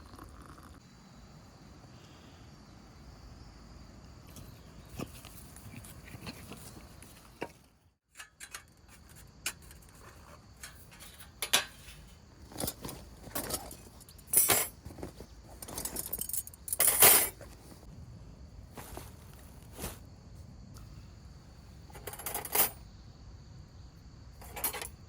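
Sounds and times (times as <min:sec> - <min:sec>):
scraping clatters: 0:04.3 - 0:17.9
metal cookware clinking and clattering: 0:08.1 - 0:08.7, 0:10.6 - 0:12.1.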